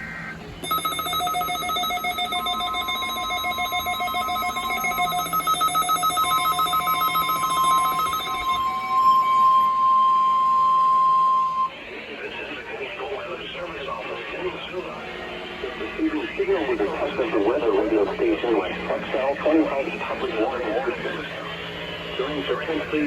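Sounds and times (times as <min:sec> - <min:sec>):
rapidly pulsing alarm beeps: 0:00.0 - 0:11.7
steady warning tone: 0:00.0 - 0:23.0.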